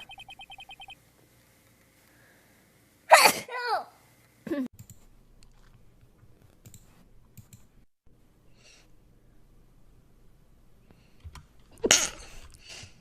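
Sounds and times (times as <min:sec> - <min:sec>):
soft clicks: 0:06.6 - 0:07.7.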